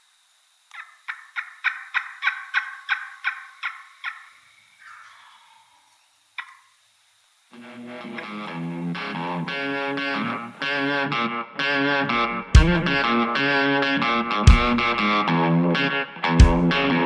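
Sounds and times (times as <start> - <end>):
turkey yelping: 0.7 - 5.7, 6.4 - 6.6
drawn-out turkey note: 0.7 - 6.7.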